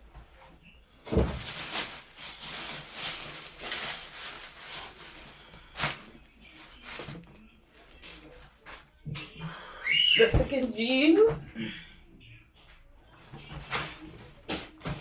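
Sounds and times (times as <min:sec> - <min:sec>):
clothing rustling: 0:00.0 - 0:08.9.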